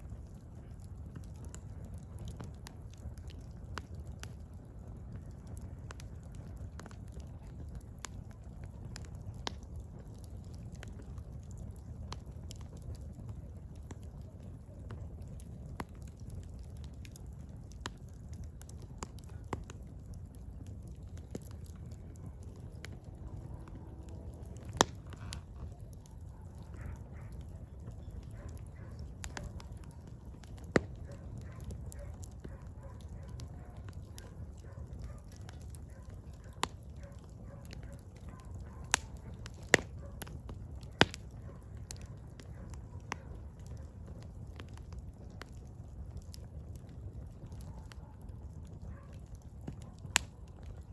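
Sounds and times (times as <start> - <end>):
low rumble of flames: 0.0 - 50.9
wood crackling and popping: 0.0 - 50.9
low steady rumble: 20.1 - 31.0.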